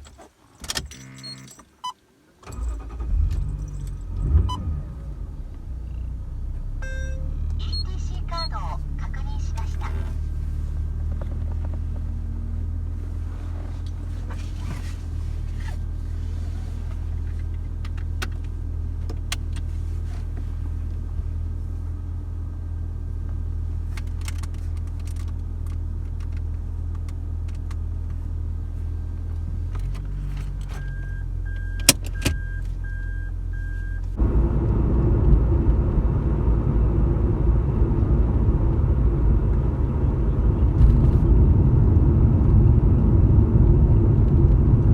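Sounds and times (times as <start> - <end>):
car engine running: 2.5 - 44.9
short beeps: 6.7 - 8.8.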